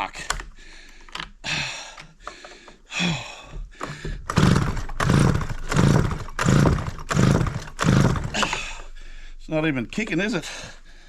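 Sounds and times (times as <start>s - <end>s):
chainsaw recoil starter pulls: 3.4s - 9.0s.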